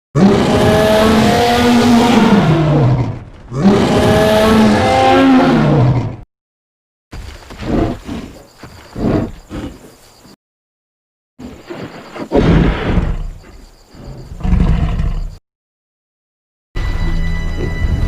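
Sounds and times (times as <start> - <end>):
dinosaur roaring: 0.2 - 6.2, 14.4 - 15.4.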